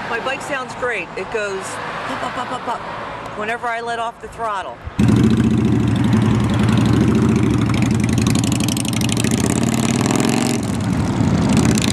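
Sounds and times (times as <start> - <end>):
motorcycle engine running: 5.0 - 11.9.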